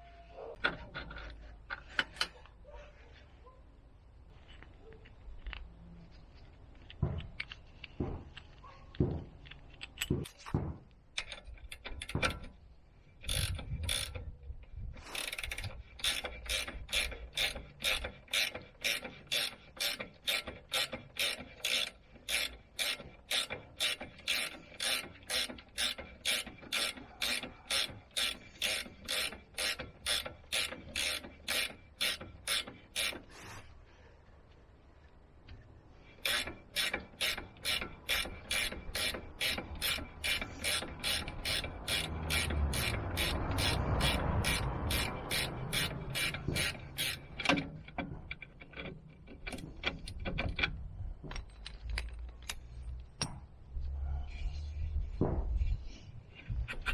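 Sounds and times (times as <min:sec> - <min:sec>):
metal knocks and clicks: 0:06.8 - 0:33.3, 0:36.2 - 0:53.6, 0:55.1 - 0:55.8
ratchet wrench clicking: 0:13.2 - 0:33.3, 0:36.2 - 0:50.8.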